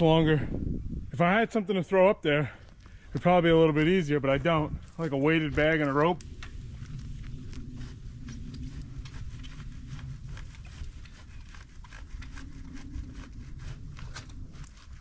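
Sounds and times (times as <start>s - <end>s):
low steady rumble: 0.0s - 15.0s
pole saw scraping wood: 6.8s - 15.0s.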